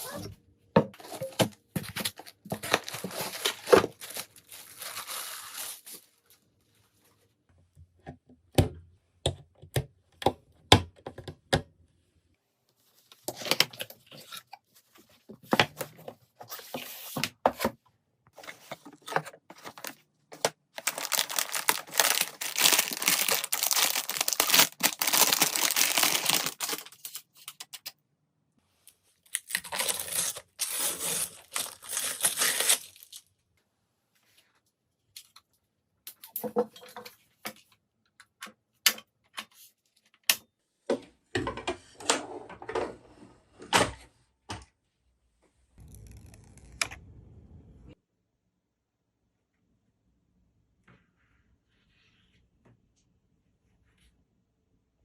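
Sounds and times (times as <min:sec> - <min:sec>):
packaging tearing and crinkling: 0:02.2 - 0:06.0, 0:20.8 - 0:27.3, 0:29.3 - 0:33.2.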